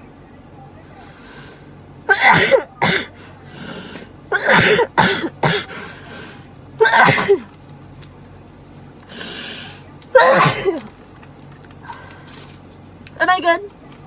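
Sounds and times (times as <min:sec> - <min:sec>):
faint breaths: 0:00.8 - 0:01.8, 0:03.0 - 0:04.2, 0:05.6 - 0:06.6, 0:09.0 - 0:10.0, 0:11.8 - 0:12.6
person sneezing: 0:02.1 - 0:03.2, 0:04.4 - 0:05.9, 0:06.8 - 0:07.4, 0:10.2 - 0:10.8.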